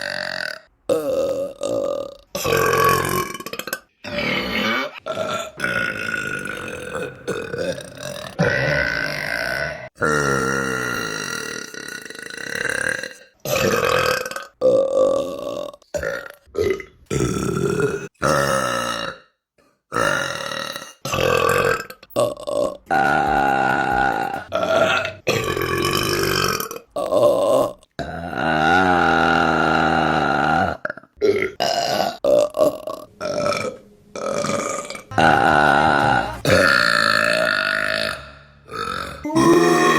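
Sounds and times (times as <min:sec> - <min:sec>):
woman burping: 0:34.2 - 0:39.9.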